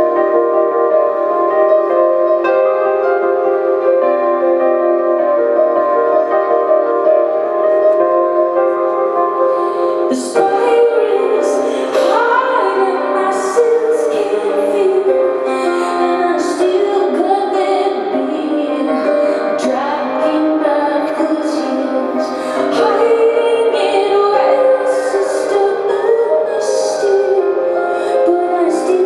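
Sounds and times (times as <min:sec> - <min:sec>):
woman singing: 0:09.6 - 0:29.0.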